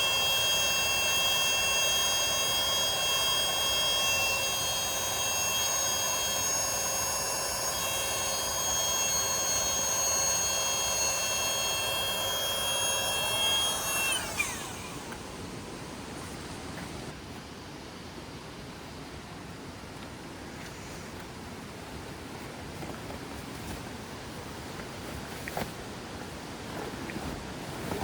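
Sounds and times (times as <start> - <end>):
small motor high whine: 0.0 - 17.1.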